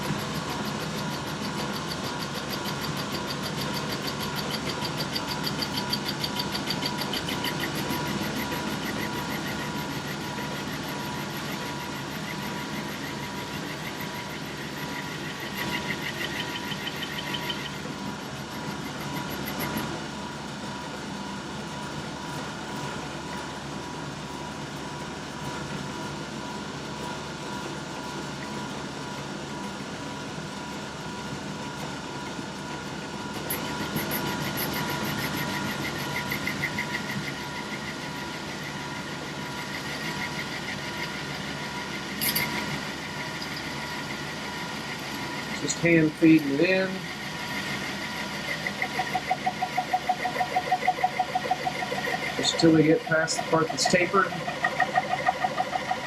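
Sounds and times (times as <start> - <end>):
lathe motor hum: 0.0 - 56.0
rhythmic metal cutting: 0.3 - 19.8, 33.5 - 56.0.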